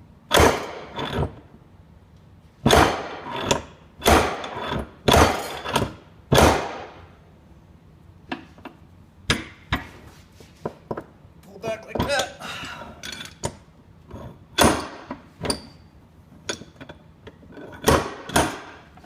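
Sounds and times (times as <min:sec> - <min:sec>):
heavy metal strikes: 0:06.3 - 0:07.0.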